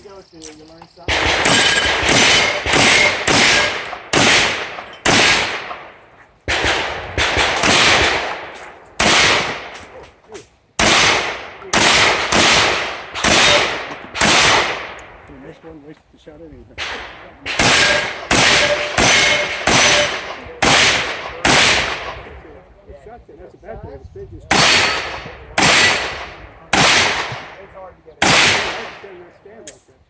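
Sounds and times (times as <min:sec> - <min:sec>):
shotgun firing rapid shots: 0:01.1 - 0:05.9, 0:06.5 - 0:09.9, 0:10.8 - 0:15.0, 0:16.8 - 0:22.3, 0:24.5 - 0:27.6, 0:28.2 - 0:29.1.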